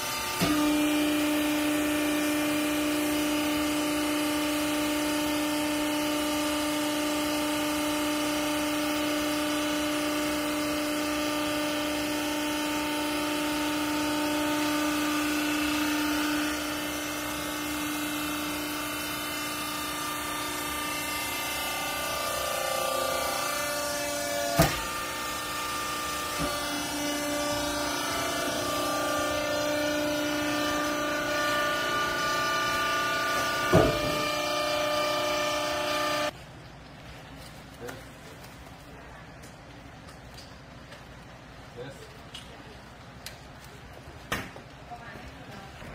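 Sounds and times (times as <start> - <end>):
baler machine hum: 7.3 - 36.3.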